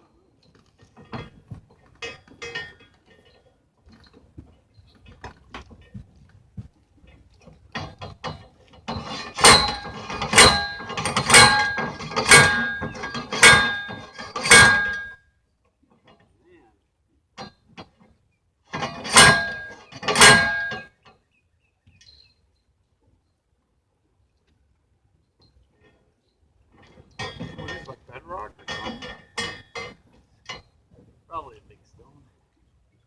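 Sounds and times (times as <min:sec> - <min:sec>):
light knocks and clanks: 0:00.4 - 0:15.1
hammer striking steel post: 0:09.0 - 0:15.2, 0:18.8 - 0:20.9.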